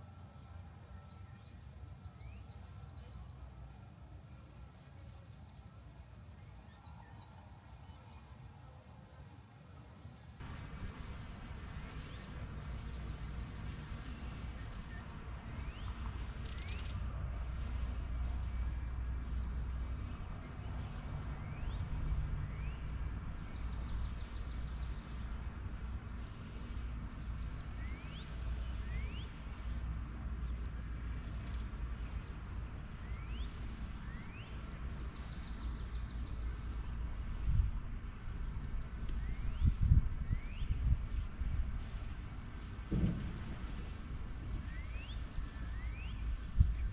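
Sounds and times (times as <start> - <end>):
steady low rumble: 10.3 - 46.9
birds whistled calls: 44.6 - 46.9.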